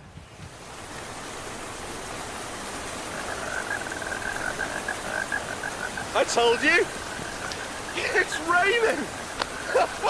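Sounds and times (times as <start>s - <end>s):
rain hissing: 0.0s - 10.0s
pulsing frog or insect trill: 3.0s - 10.0s.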